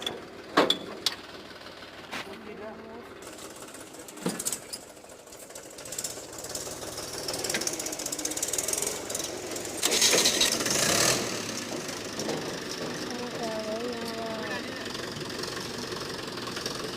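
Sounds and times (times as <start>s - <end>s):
diesel tractor engines knocking: 0.0s - 16.9s.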